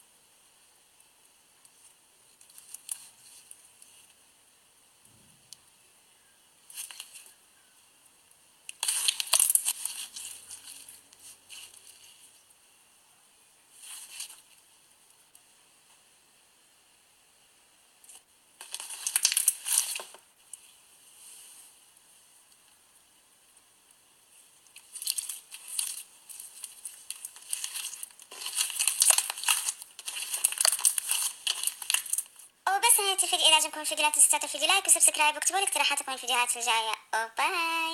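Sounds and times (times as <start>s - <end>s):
slime crackling and crinkling: 1.7s - 4.2s, 6.7s - 7.4s, 8.7s - 12.4s, 13.7s - 14.7s, 18.1s - 20.7s, 24.6s - 36.8s
slime crackling and clicking: 8.7s - 10.3s, 18.6s - 20.1s, 26.6s - 32.4s.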